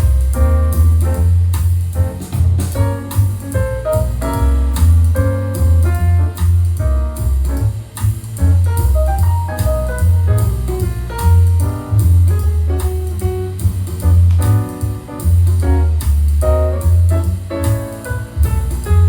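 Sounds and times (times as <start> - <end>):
drums with cymbal hits: 0.0 - 19.0
heavy bass line: 0.0 - 19.0
jazz piano chords: 0.0 - 19.0.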